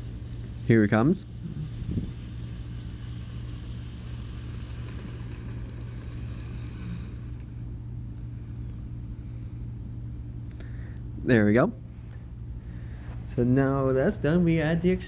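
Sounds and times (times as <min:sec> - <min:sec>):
electric motor hum: 0:00.0 - 0:09.6
faint wheels on rails: 0:00.0 - 0:09.6.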